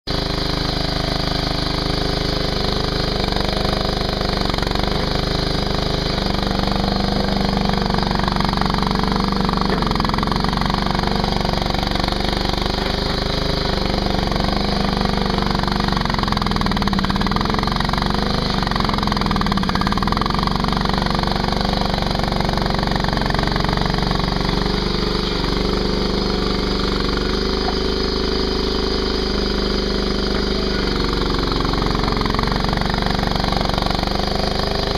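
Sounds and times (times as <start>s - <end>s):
skid steer engine running: 0.1s - 34.9s.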